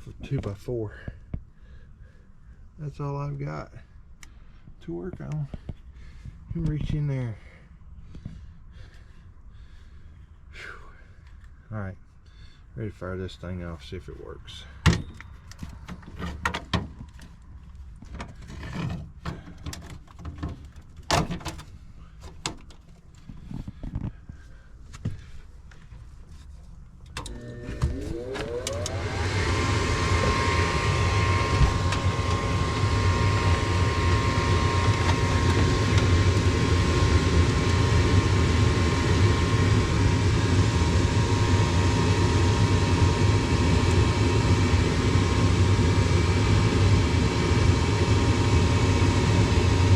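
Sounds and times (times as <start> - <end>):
furnace motor whining and humming: 27.0 - 49.9
rushing air: 28.0 - 44.9.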